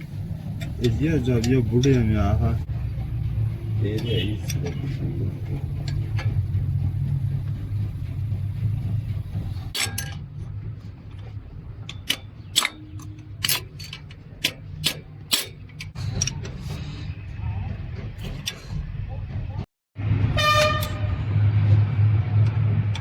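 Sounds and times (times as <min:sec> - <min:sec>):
steady low hum: 0:00.0 - 0:20.2
metal parts clinking: 0:09.7 - 0:10.2, 0:11.8 - 0:16.6.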